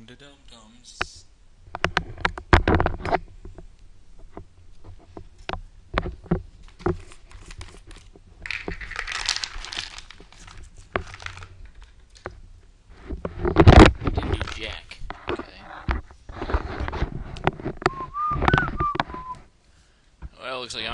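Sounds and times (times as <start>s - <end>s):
wrapper crinkling and tearing: 6.6s - 12.2s, 14.2s - 14.8s.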